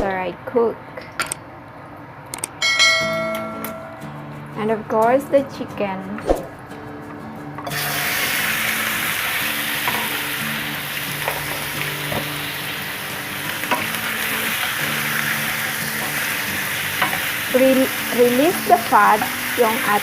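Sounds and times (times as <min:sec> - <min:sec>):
chicken sizzling in hot oil: 0:07.7 - 0:20.0.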